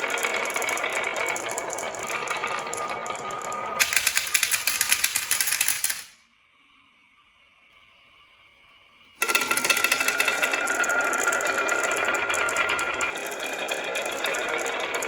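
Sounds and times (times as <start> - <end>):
marbles rolling down wooden run: 0.0 - 6.1, 9.2 - 15.0.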